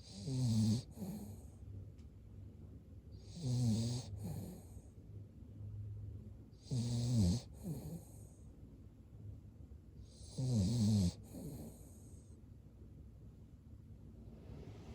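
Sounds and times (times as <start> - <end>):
dog snoring: 0.0 - 1.5, 3.2 - 4.9, 6.6 - 8.4, 10.0 - 12.3.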